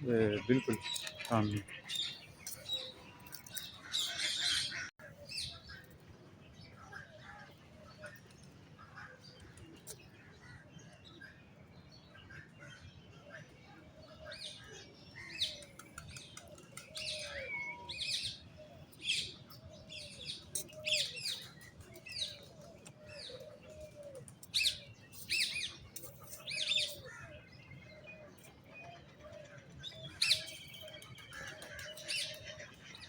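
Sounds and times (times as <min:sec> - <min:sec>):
lower rounded bird calls: 0:13.2 - 0:33.0.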